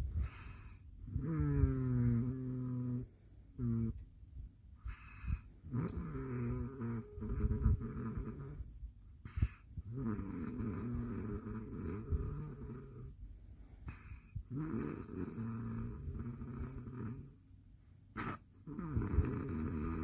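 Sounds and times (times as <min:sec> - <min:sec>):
man snoring: 0:01.1 - 0:04.0, 0:05.7 - 0:08.6, 0:09.9 - 0:13.1, 0:14.5 - 0:17.3, 0:18.2 - 0:20.0.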